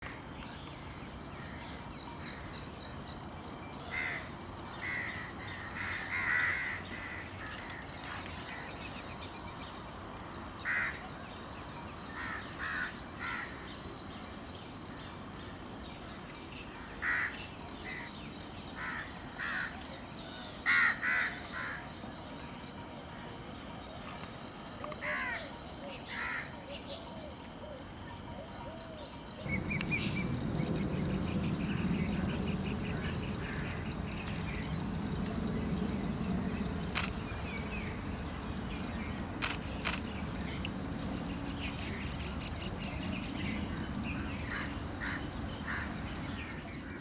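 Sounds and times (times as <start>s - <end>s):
steady high hiss: 28.6s - 47.0s
harsh bird calls: 29.4s - 46.9s.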